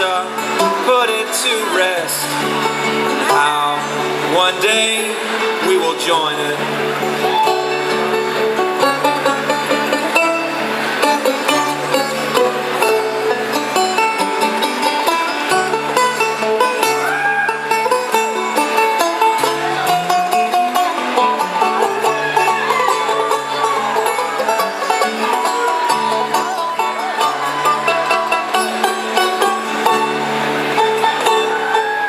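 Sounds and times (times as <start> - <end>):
acoustic guitar: 0.0 - 32.0
banjo picking: 0.0 - 32.0.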